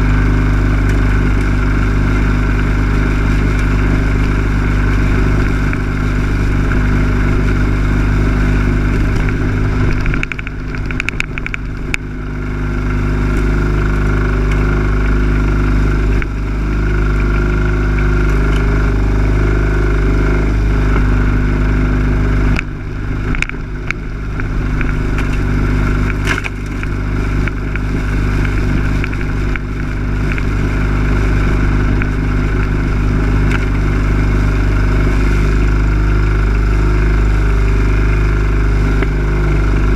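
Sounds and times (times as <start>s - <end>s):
lawn mower engine running: 0.0s - 39.9s
rattling clicks: 8.8s - 12.1s.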